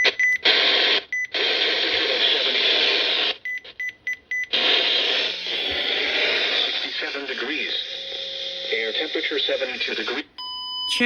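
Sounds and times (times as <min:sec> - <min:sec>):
radio static bursts: 0:00.4 - 0:03.4, 0:04.6 - 0:08.0, 0:08.7 - 0:10.3
radio beeping: 0:04.5 - 0:11.0.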